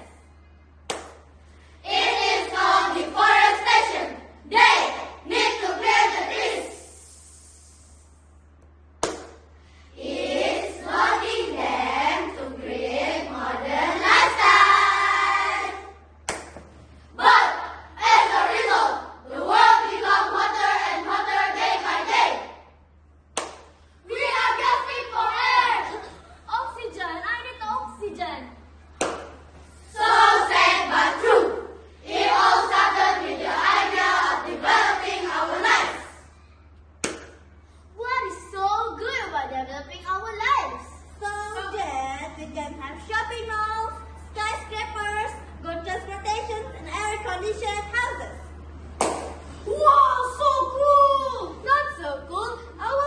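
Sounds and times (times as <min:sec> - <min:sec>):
sharp clap or knock: 0:00.9 - 0:01.3, 0:09.0 - 0:09.5, 0:16.2 - 0:16.8, 0:23.3 - 0:23.8, 0:29.0 - 0:29.5, 0:37.0 - 0:37.5, 0:49.0 - 0:49.5
children chanting in unison: 0:17.2 - 0:22.6, 0:29.9 - 0:36.2.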